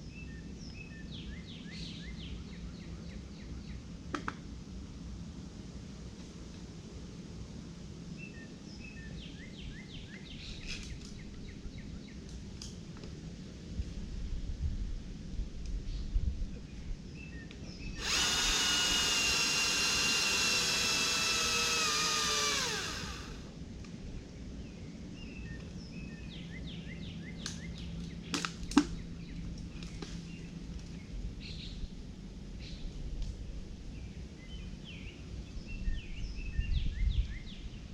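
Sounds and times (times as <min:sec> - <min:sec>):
chainsaw running: 0:18.0 - 0:23.5.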